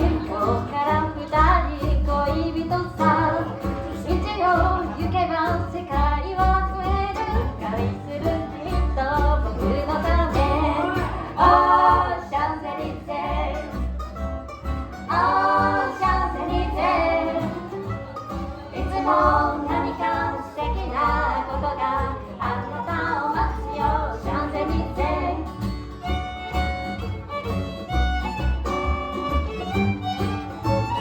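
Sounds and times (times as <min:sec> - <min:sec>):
bluegrass band playing live: 0:00.0 - 0:31.0.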